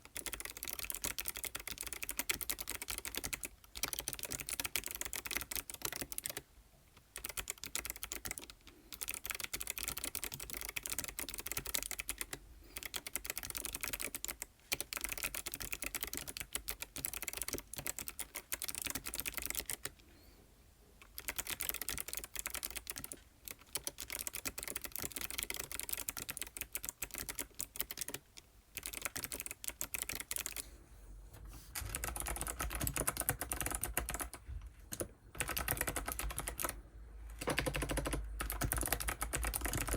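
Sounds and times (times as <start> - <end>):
mechanical keyboard typing: 0.0 - 6.4, 7.0 - 19.9, 21.0 - 30.6, 31.8 - 39.9.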